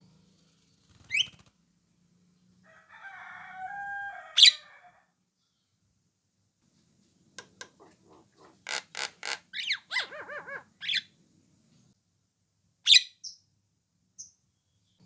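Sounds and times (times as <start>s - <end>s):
myna bird calling: 7.6s - 11.1s.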